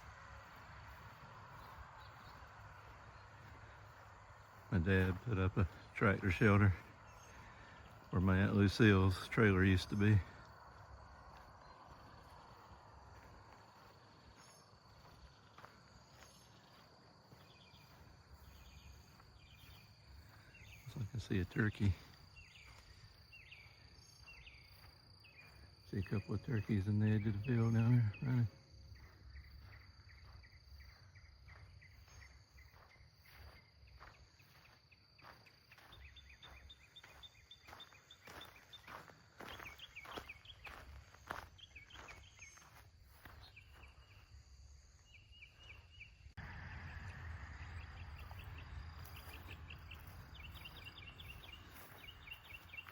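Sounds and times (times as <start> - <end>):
faint crickets chirping: 0.0 - 52.9
high insect drone: 0.0 - 52.9
low rumble: 46.4 - 51.9.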